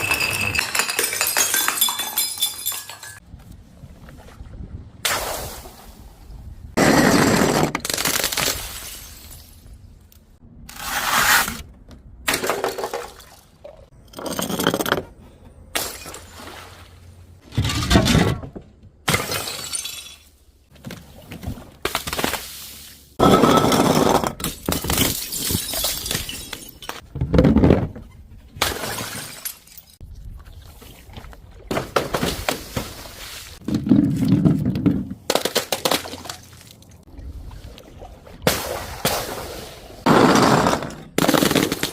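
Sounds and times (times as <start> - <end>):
glass bottles shattering: 0.0 - 3.2, 19.1 - 20.4, 23.2 - 27.0, 28.6 - 30.0
glass tinkling spill: 0.0 - 3.2.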